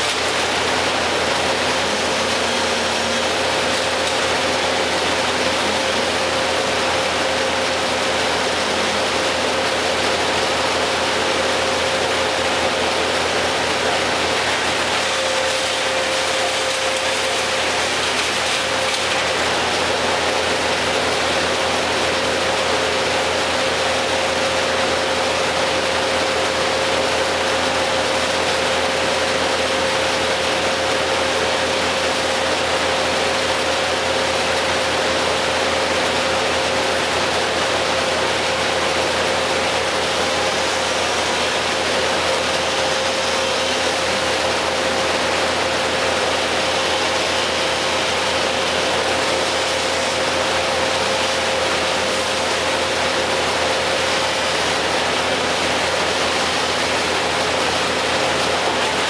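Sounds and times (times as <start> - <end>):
engine running steadily: 0.0 - 59.0.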